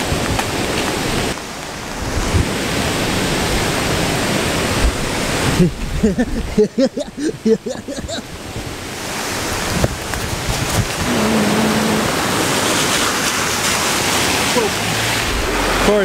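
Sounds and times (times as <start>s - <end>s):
roar of rushing floodwater: 0.0s - 16.0s
short voice-like sounds: 11.0s - 12.3s.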